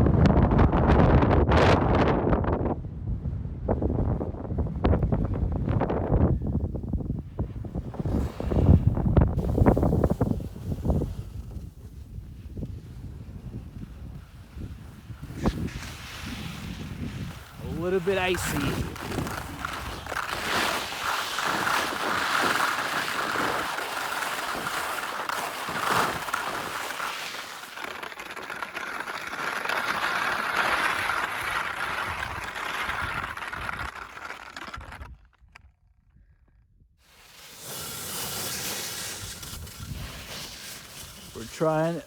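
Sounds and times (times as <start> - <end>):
skis scraping on icy snow: 7.3 - 35.1, 37.0 - 42.0.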